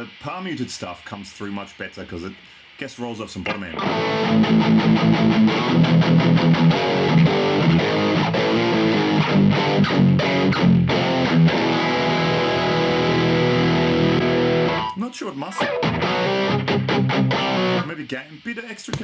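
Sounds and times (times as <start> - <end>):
distorted electric guitar chugs: 3.6 - 15.0, 15.6 - 17.9.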